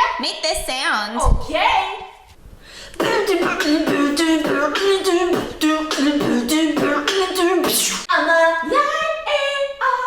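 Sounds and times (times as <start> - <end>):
beatboxing: 2.9 - 8.1.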